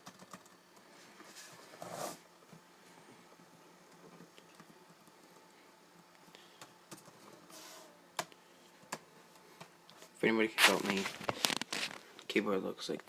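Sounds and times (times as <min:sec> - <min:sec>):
laptop keys clicking: 0:00.0 - 0:00.6.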